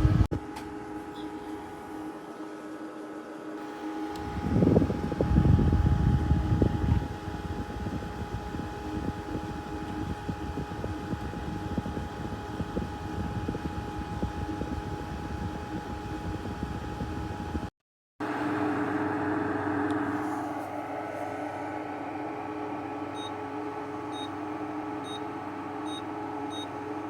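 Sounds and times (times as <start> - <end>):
fan motor hum: 0.0 - 27.0
air rumbling on microphone: 4.2 - 17.6.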